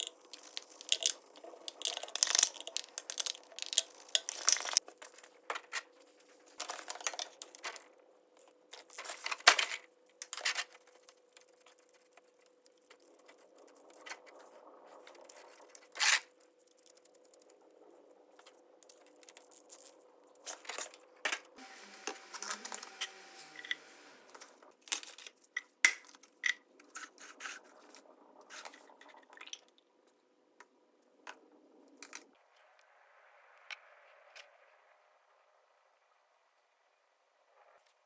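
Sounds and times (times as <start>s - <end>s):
small objects clicking and scraping: 0.0s - 17.7s, 18.4s - 29.6s.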